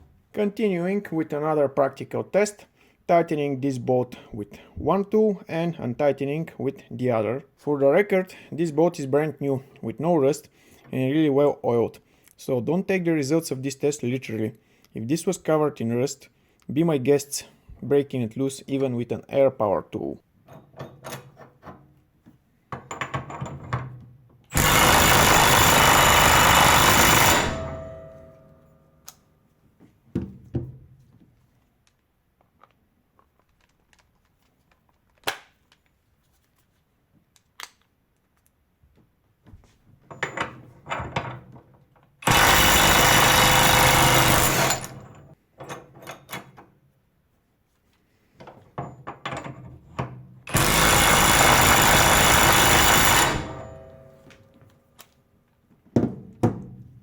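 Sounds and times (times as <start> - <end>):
impact wrench hammering on bolt: 24.6 - 28.5, 42.3 - 45.0, 50.5 - 54.2.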